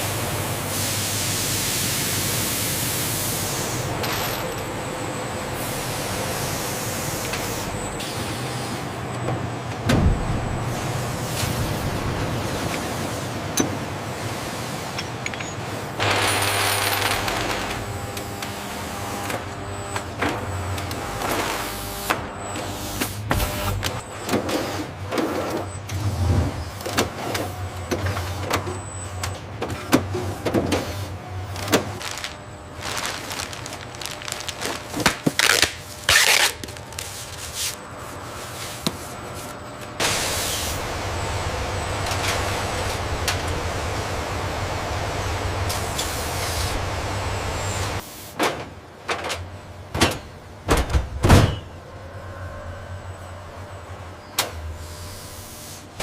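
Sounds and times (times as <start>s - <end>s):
machinery hiss: 0.0s - 3.9s, 40.0s - 43.1s
machinery humming: 0.0s - 48.0s, 51.7s - 56.0s
high machine whine: 39.2s - 48.0s.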